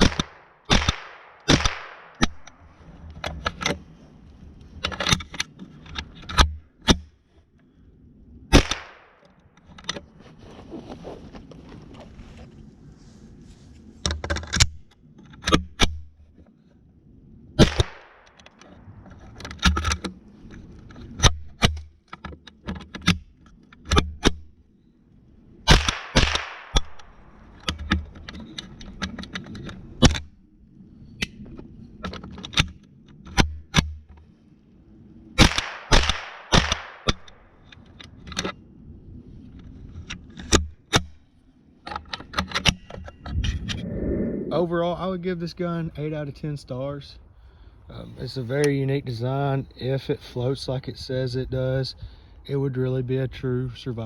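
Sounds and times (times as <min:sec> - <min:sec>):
rifle shots: 0:00.0 - 0:02.7, 0:08.5 - 0:09.2, 0:17.6 - 0:18.2, 0:25.7 - 0:27.4, 0:35.4 - 0:37.4.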